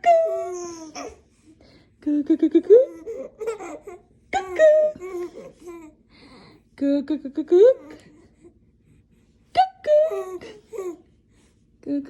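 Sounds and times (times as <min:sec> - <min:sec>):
baby laughing: 0:00.1 - 0:01.2, 0:02.8 - 0:05.9.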